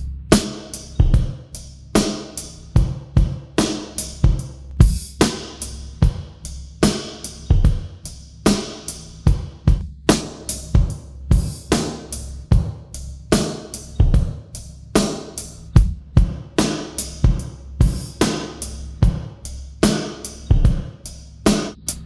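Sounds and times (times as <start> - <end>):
drum kit groove with reverb: 0.0 - 22.0.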